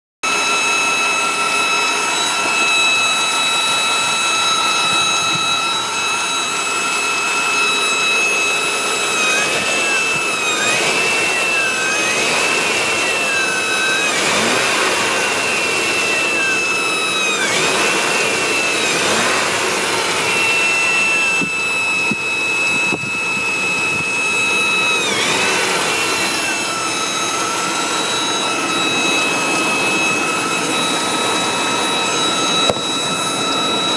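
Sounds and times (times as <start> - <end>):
car engine running: 0.2 - 33.9
high-pitched engine whine: 0.2 - 33.9.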